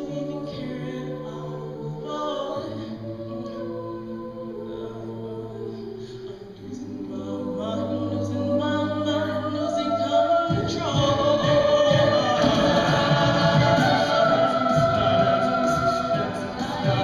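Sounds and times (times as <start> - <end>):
vocal ensemble singing chords: 0.0 - 17.0
low rhythmic pulse: 9.5 - 17.0.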